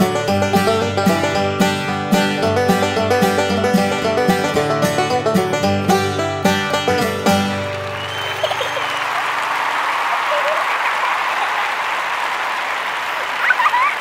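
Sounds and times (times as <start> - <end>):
banjo tune: 0.0 - 8.9
audience applause: 7.3 - 14.0
voices calling out: 8.0 - 14.0.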